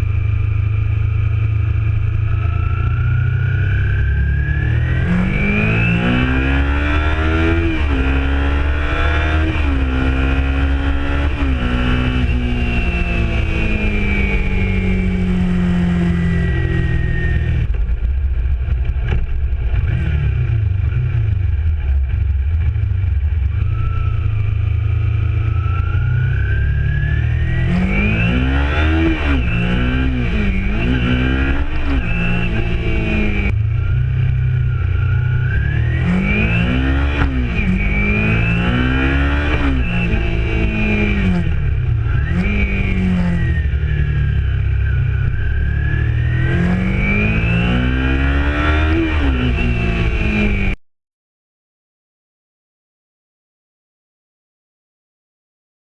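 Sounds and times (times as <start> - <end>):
motorcycle engine revving through gears: 0.0 - 50.8
low rumble: 10.8 - 47.2.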